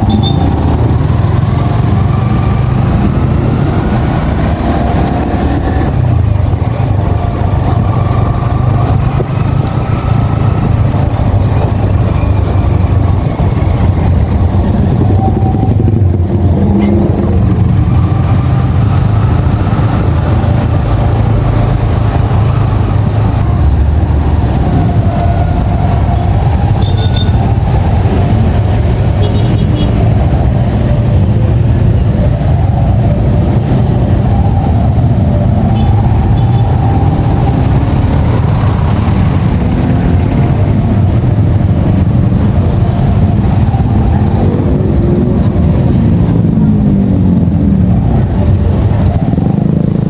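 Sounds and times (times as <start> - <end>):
motorcycle engine running: 0.0 - 50.0
road and wind noise: 0.0 - 50.0.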